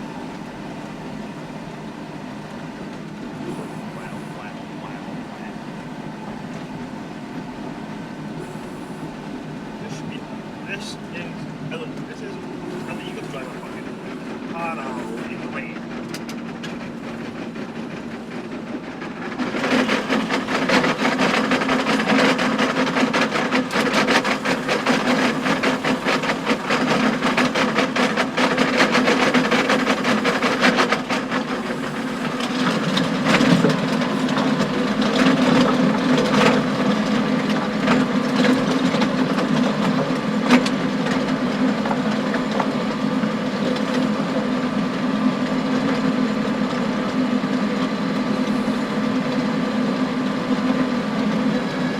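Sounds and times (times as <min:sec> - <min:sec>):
tractor engine under load: 0:00.0 - 0:51.9.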